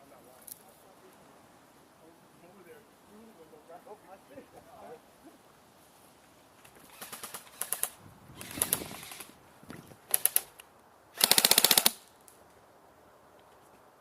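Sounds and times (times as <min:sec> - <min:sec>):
airsoft rifles firing: 0:06.9 - 0:09.3, 0:10.1 - 0:10.5, 0:11.2 - 0:12.1.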